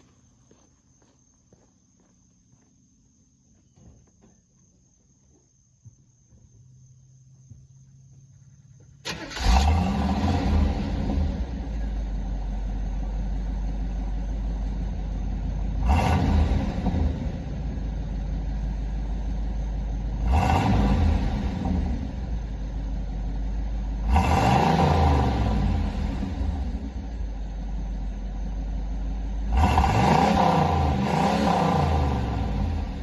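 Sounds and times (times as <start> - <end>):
car engine idling and revving: 6.3 - 33.0.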